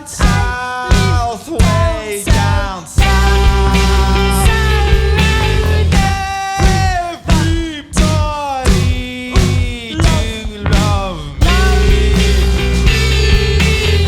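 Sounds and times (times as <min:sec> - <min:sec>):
rock band playing live: 0:00.0 - 0:14.0
sliding psychedelic guitar notes: 0:03.0 - 0:06.0.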